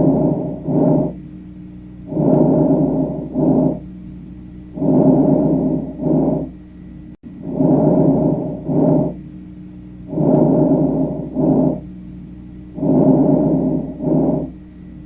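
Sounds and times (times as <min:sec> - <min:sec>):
breath sounds through stethoscope: 0:00.0 - 0:01.2, 0:02.1 - 0:03.8, 0:04.8 - 0:06.5, 0:07.4 - 0:09.2, 0:10.1 - 0:11.8, 0:12.8 - 0:14.6
faint steady hum: 0:00.0 - 0:15.0.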